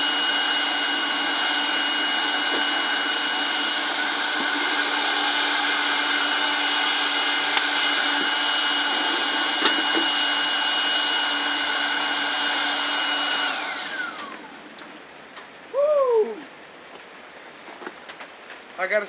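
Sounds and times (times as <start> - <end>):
electric blower whining: 0.0 - 15.0.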